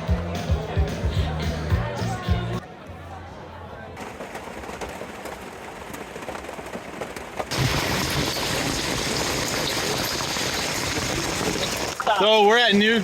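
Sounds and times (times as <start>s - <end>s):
heavy downpour of rain and hail: 4.0s - 13.0s
rain falling: 4.0s - 13.0s.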